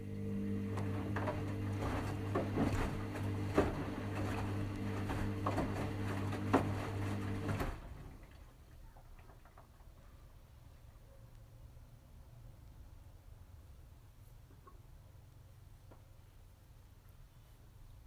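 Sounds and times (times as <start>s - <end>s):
washing machine humming: 0.0s - 9.0s
washing machine clicks and knocks: 0.7s - 8.0s.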